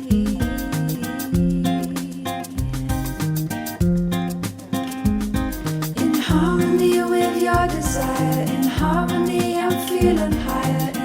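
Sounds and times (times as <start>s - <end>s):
upbeat instrumental music: 0.0s - 11.0s.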